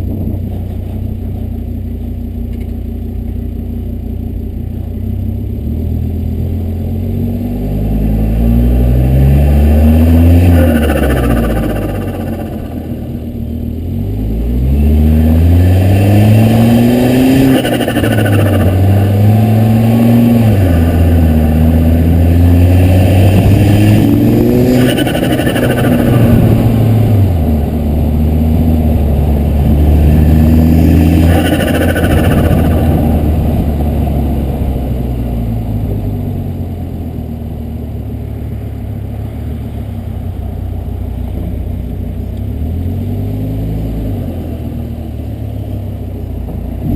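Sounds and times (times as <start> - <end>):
car engine accelerating: 0.0 - 46.9
turbo compressor fluttering: 10.4 - 13.6, 16.8 - 28.2, 29.2 - 34.0.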